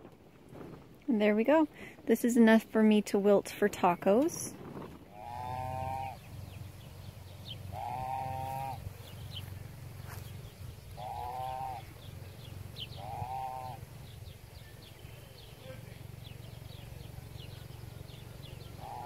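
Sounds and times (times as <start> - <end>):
steady low hum: 0.0 - 19.0
animal bleating: 5.1 - 6.2.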